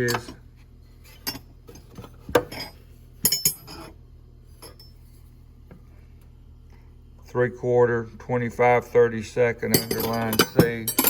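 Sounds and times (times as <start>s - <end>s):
metal wrenches clinking: 1.2s - 3.9s, 9.7s - 11.0s.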